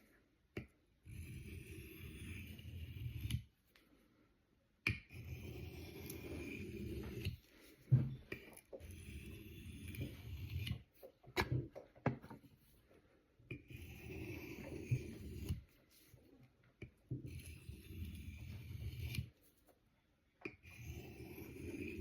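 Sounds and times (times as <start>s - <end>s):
knife scraping on sharpening stone: 1.0s - 3.4s, 5.1s - 7.4s, 8.3s - 10.9s, 13.7s - 15.6s, 17.2s - 19.3s, 20.6s - 22.0s.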